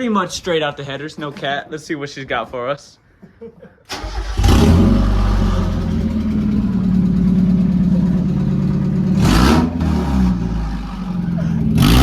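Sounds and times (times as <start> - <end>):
loud car engine idling and revving: 4.1 - 12.0.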